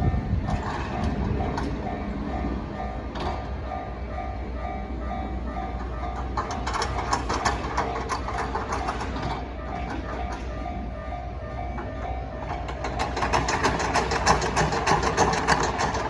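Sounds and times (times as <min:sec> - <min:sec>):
crossing warning bell ringing: 0:00.0 - 0:16.0
train wheels clacking over rail joints: 0:00.1 - 0:04.8, 0:05.5 - 0:16.0.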